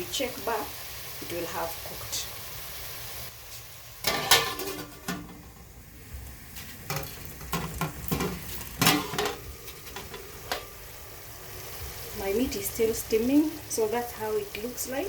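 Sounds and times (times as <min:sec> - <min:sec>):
food sizzling in a pot: 0:00.0 - 0:15.0
metal pot and lid clinking: 0:04.0 - 0:05.7, 0:06.9 - 0:10.8.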